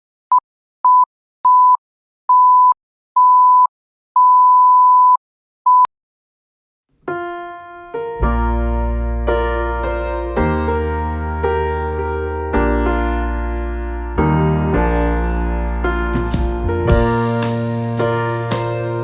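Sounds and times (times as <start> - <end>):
bass: 7.0 - 19.0
electric piano music: 7.1 - 19.0.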